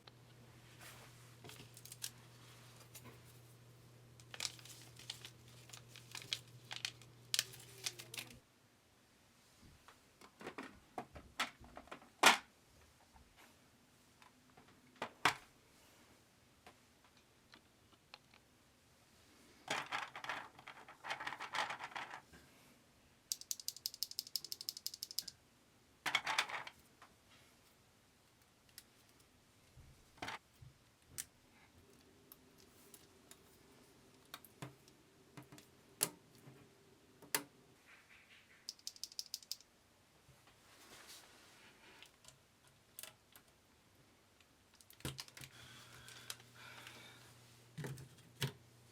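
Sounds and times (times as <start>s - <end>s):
keyboard parts clicking and clattering: 1.5s - 2.2s, 4.2s - 8.4s, 19.7s - 22.2s, 23.3s - 25.3s, 38.7s - 39.7s, 44.7s - 46.4s
rapid ticks: 23.3s - 25.3s, 38.7s - 39.6s.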